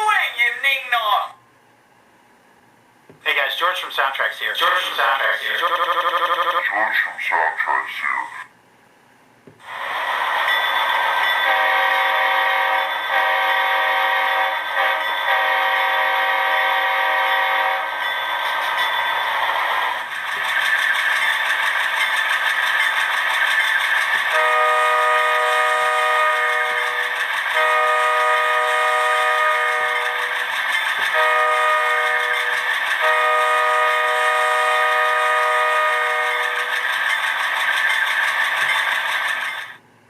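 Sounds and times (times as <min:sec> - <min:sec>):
diesel locomotive engine running: 0:02.9 - 0:08.4, 0:09.5 - 0:40.0
multi-chime locomotive horn: 0:10.5 - 0:19.3, 0:24.3 - 0:30.4, 0:31.1 - 0:36.7.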